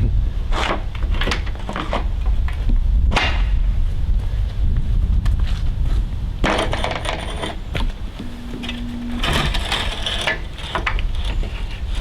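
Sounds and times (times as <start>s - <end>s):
steady low rumble: 2.2s - 6.5s, 7.2s - 10.1s
metal parts clanking and rattling: 6.4s - 7.6s, 8.6s - 11.8s.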